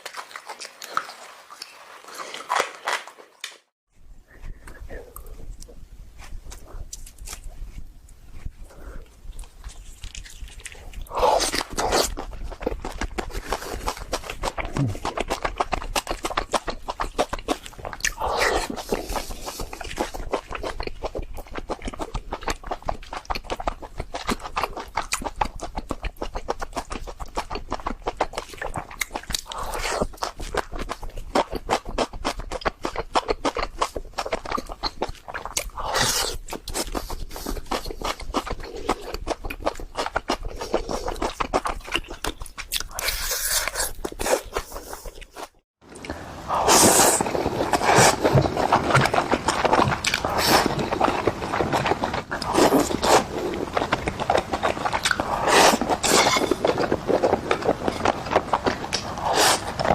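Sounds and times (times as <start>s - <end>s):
chewing meat: 0.0s - 3.7s, 5.0s - 59.9s
loud bites or slurps: 11.0s - 12.2s, 46.0s - 53.6s, 54.5s - 57.8s, 58.9s - 59.9s.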